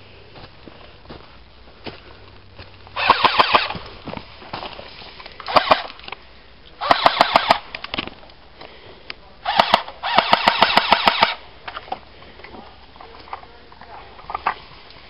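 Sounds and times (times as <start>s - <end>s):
airsoft guns firing bursts: 3.0s - 3.8s, 5.5s - 5.9s, 6.8s - 7.7s, 9.4s - 11.4s.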